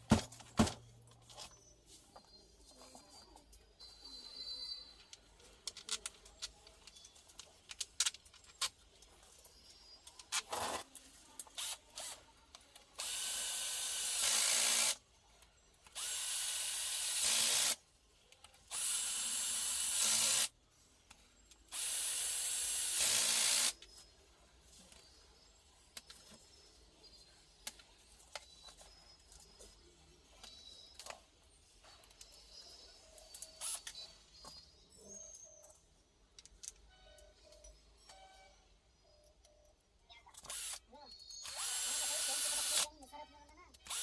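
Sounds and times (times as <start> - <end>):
clicks and knocks of handling: 5.1 - 9.2.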